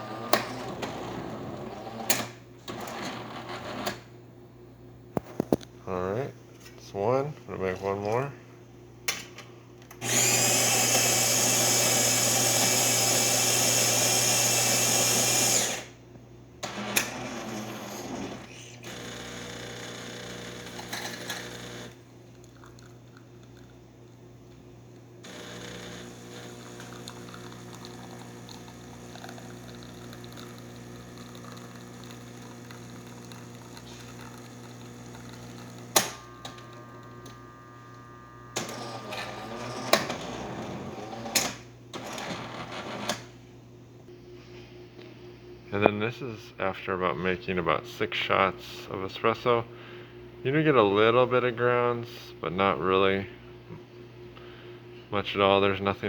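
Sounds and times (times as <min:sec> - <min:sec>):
coffee grinder running: 0:10.0 - 0:16.0, 0:16.6 - 0:23.7, 0:25.2 - 0:41.4
pump humming: 0:10.0 - 0:16.0, 0:16.6 - 0:23.7, 0:25.2 - 0:41.2.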